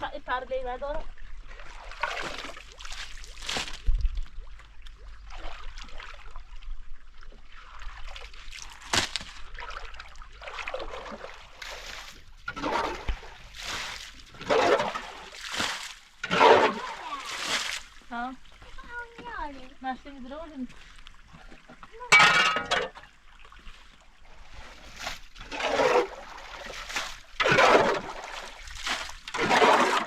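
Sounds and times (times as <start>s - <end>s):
water splashing and sloshing: 0.0s - 30.0s
water trickling: 0.0s - 30.0s.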